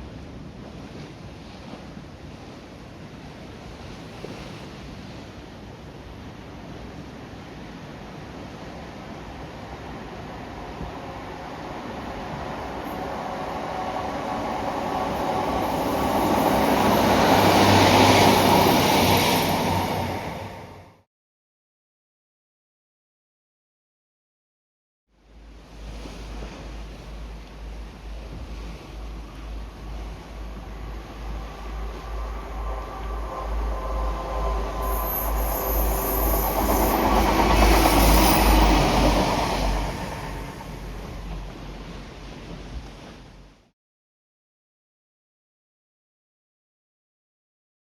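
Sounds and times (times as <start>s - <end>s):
diesel train passing: 7.9s - 21.0s, 26.6s - 43.5s
high squeal of wheels on rail: 10.5s - 20.8s, 30.4s - 41.1s
wind rumble on microphone: 25.3s - 43.6s.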